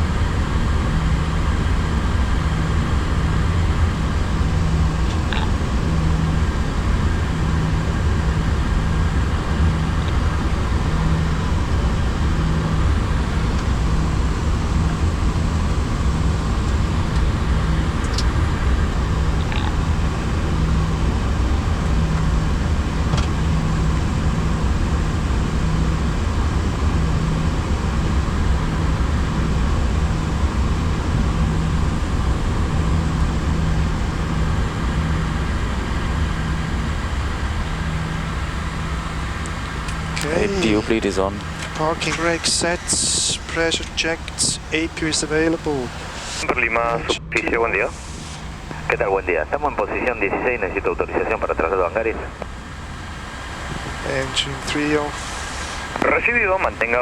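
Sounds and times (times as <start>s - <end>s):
aircraft engines idling hum: 0.0s - 57.0s
rushing hiss: 52.6s - 56.6s.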